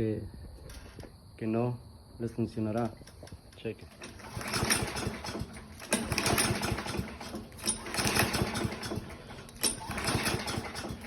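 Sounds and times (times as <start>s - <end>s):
lawn mower engine cranking: 0.6s - 1.1s, 2.7s - 11.0s.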